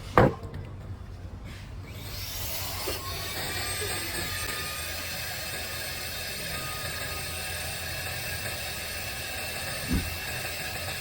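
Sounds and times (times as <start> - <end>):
vacuum cleaner motor whining: 2.7 - 11.0.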